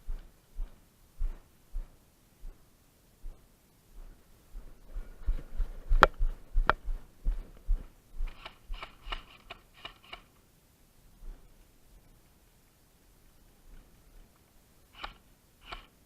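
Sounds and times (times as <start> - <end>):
rustling and soft thumps: 0.0 - 9.0, 11.1 - 12.3, 13.2 - 14.5
crackly rustles: 3.3 - 10.4
sharp clicks: 8.2 - 10.3, 15.0 - 15.9.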